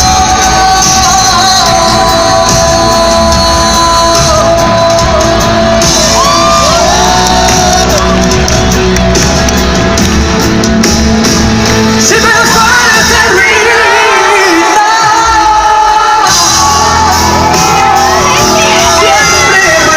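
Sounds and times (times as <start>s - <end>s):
person singing long sliding notes: 0.0s - 8.4s
live pop band music: 0.0s - 19.9s
crowd shouting: 5.4s - 8.8s, 12.6s - 19.9s.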